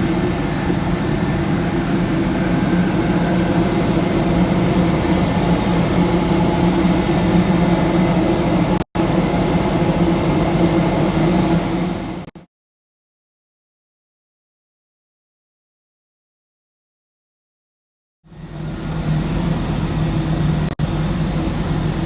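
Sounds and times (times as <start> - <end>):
jet engine drone: 0.0 - 12.4, 18.3 - 22.0.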